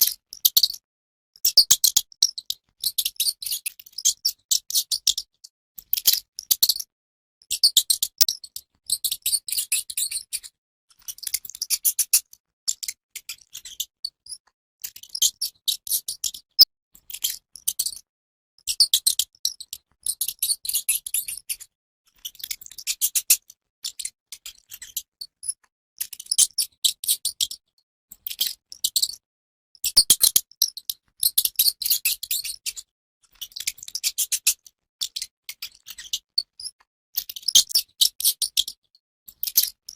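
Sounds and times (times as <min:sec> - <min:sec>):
mouse squeaking and chittering: 0:01.5 - 0:02.3, 0:30.0 - 0:30.4.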